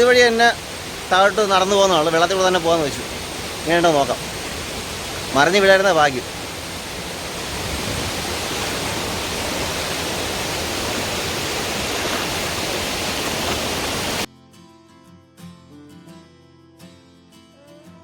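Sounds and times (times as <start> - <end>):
waterfall and river rushing: 0.0 - 14.3
quiet plucked guitar music: 14.3 - 18.0.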